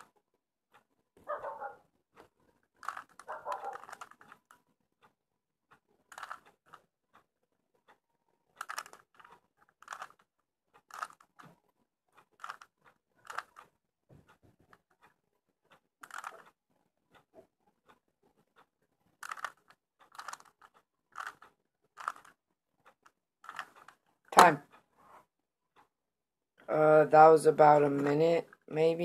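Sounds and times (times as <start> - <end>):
puzzle cube clicking and rattling: 2.7 - 4.6, 6.0 - 6.9, 8.5 - 11.6, 12.2 - 13.7, 16.0 - 16.6, 19.1 - 22.4, 23.0 - 24.4.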